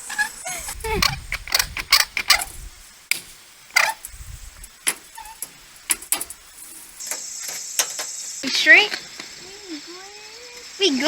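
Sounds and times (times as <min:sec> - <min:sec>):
low rumbles: 0:00.0 - 0:07.0
sheet steel knocking and clanking: 0:04.8 - 0:08.1.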